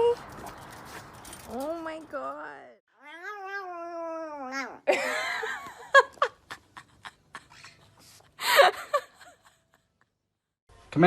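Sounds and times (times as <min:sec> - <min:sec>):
cat meowing: 0:03.0 - 0:04.8
person laughing: 0:04.9 - 0:10.1.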